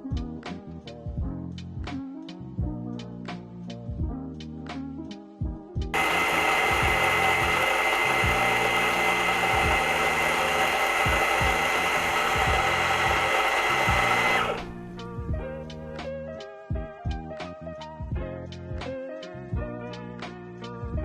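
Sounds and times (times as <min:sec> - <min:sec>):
coffee grinder whirring: 0:06.0 - 0:15.9.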